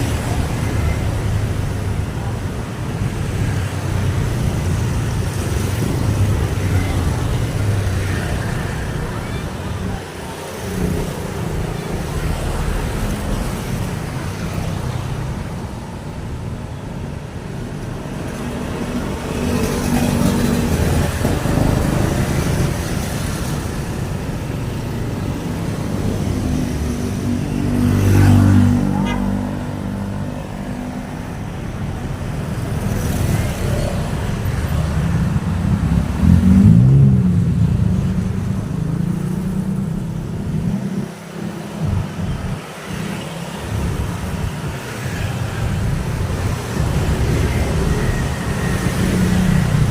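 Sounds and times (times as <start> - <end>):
road traffic passing: 0.0 - 49.9
loud vehicle passing: 18.5 - 49.9.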